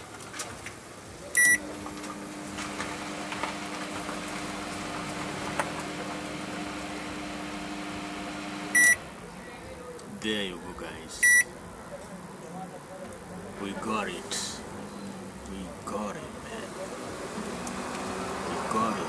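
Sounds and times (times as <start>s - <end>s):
microwave oven humming: 1.0s - 9.5s, 16.4s - 19.0s
microwave oven beeps: 1.4s - 1.8s, 5.9s - 9.1s, 11.2s - 11.5s.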